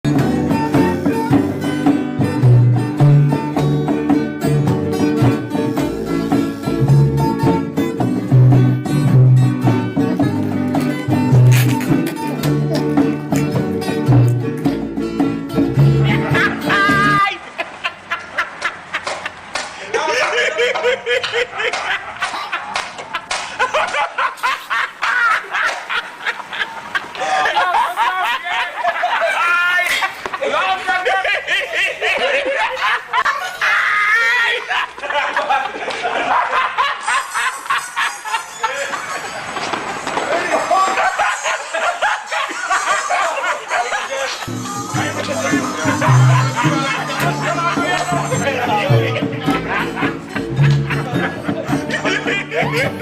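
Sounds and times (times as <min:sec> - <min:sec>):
upbeat plucked-string music: 0:00.0 - 0:17.3, 0:44.4 - 0:53.0
snickering and giggling laughter: 0:17.5 - 0:39.7, 0:40.3 - 0:44.5, 0:45.1 - 0:53.0.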